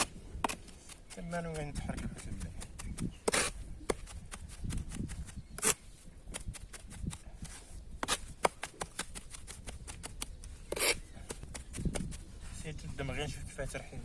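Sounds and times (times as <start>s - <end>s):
sharp scrape: 3.2s - 3.6s, 5.6s - 5.9s, 10.7s - 11.1s.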